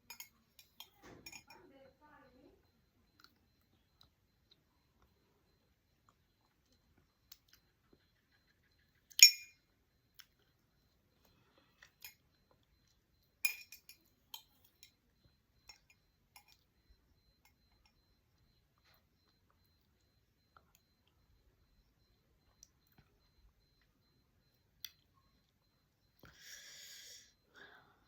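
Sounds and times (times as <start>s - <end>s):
glasses clinking: 9.2s - 9.6s, 13.5s - 14.0s.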